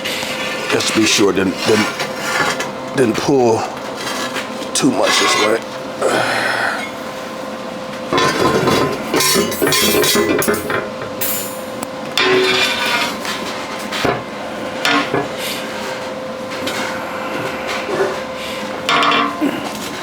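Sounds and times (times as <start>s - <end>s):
steel plate clanking on metal: 5.0s - 5.6s, 8.1s - 15.4s, 18.9s - 20.0s.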